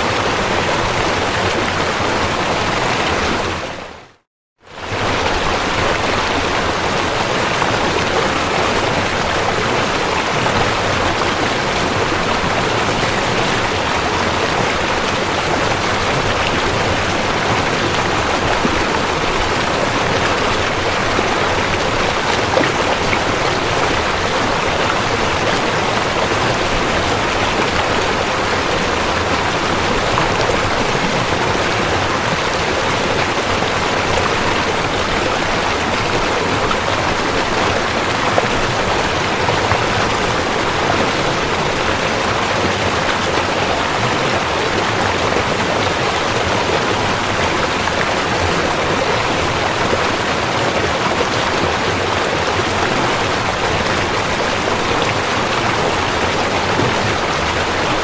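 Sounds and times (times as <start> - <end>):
rushing river water: 0.0 - 58.0.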